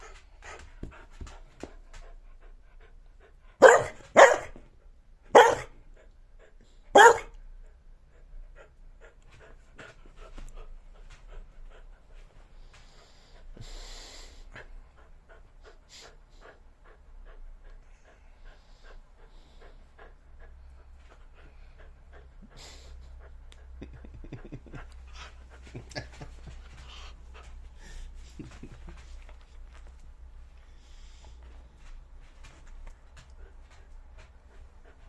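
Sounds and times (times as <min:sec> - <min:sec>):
dog barking: 0:03.6 - 0:04.6, 0:05.3 - 0:05.7, 0:06.9 - 0:07.3.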